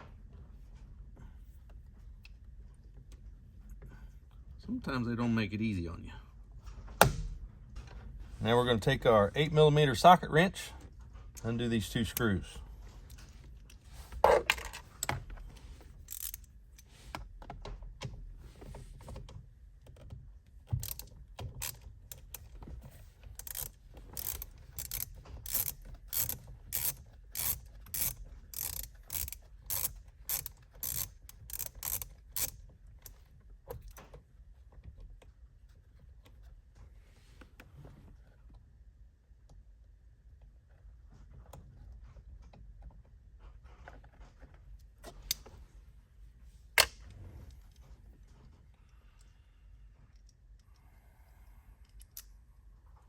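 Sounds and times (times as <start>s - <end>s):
ratchet wrench clicking: 16.0s - 16.5s, 20.8s - 22.4s, 23.3s - 32.6s.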